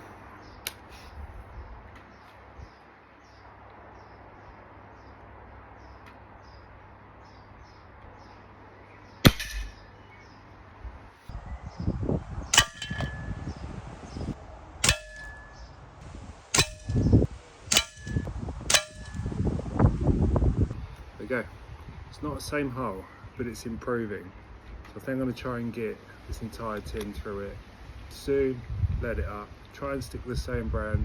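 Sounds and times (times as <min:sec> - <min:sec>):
air rifle firing crack: 0:09.2 - 0:09.8, 0:14.8 - 0:15.6, 0:16.5 - 0:19.4
sharp metallic clicks: 0:09.2 - 0:09.8, 0:12.5 - 0:13.5, 0:14.8 - 0:15.8, 0:16.5 - 0:19.4.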